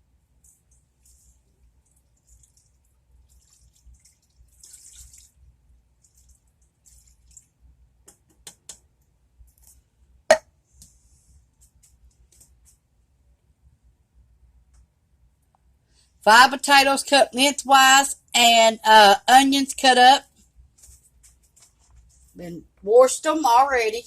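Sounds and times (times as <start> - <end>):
dripping: 0.6 - 7.6
broth pouring and splashing: 1.0 - 7.6.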